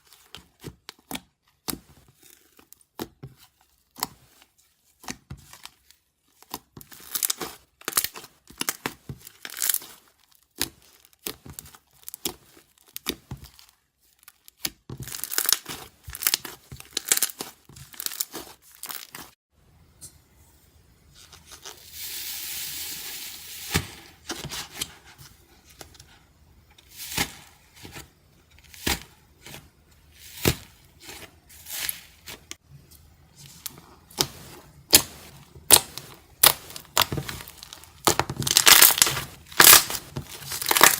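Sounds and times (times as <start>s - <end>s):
slime crust crackling and crunching: 0.0s - 19.4s, 33.4s - 40.9s.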